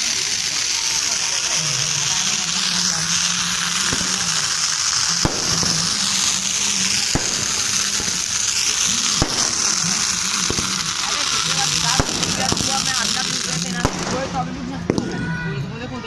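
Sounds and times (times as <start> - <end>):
sharp firecracker bangs: 0.0 - 15.3
firecrackers crackling: 0.0 - 16.0.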